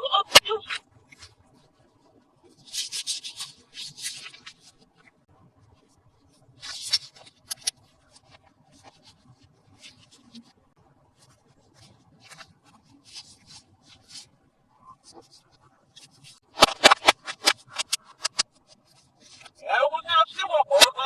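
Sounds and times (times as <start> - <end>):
packaging rustles and scrapes: 2.5 - 4.9, 6.3 - 10.6, 15.0 - 19.6.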